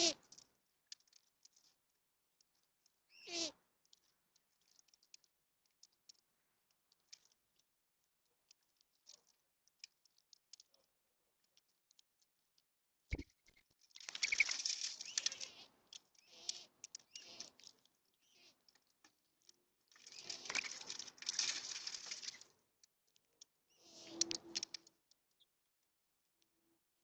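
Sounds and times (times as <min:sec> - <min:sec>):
birds wings fluttering: 0:14.0 - 0:15.6, 0:20.0 - 0:22.5.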